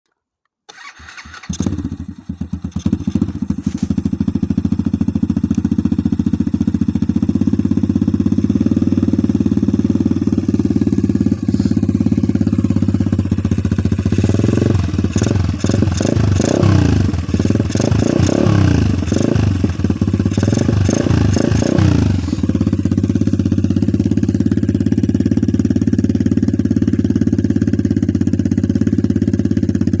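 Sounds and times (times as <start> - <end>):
motorbike engine idling and revving: 0.7 - 30.0.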